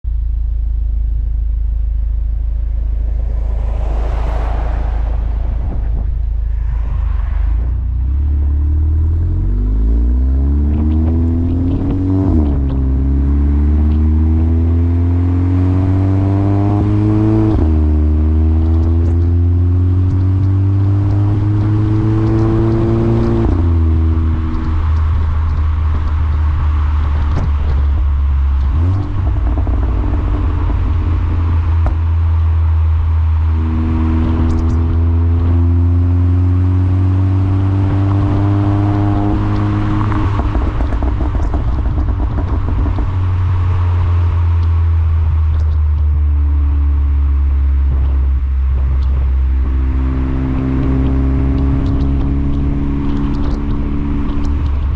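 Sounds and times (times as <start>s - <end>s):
car engine accelerating: 0.2s - 54.9s
exhaust crackles: 0.6s - 54.9s.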